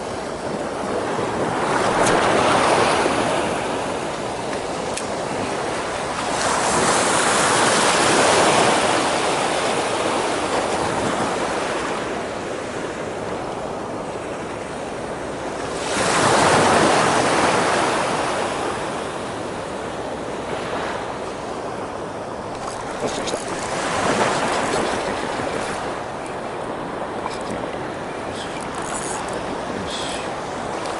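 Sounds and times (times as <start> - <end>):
wind on microphone: 15.6 - 30.9
surf breaking: 22.5 - 30.9.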